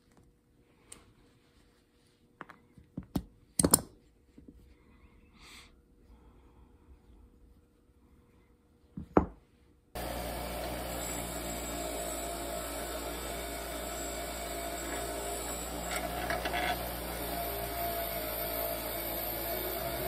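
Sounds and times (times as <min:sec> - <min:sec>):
small machine humming and rasping: 0:10.0 - 0:20.0.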